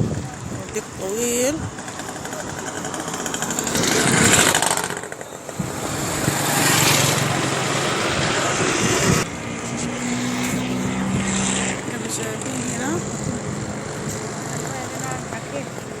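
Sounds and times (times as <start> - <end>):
cars passing: 0.0 - 16.0.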